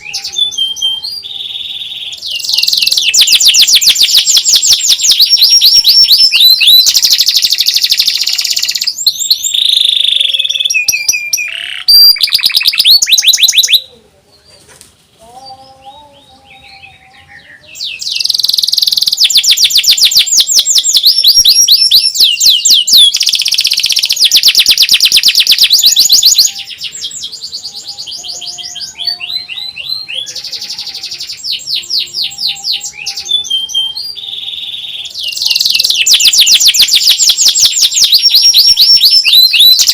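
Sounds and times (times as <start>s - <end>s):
canary trilling: 0.0s - 13.9s, 15.6s - 39.9s.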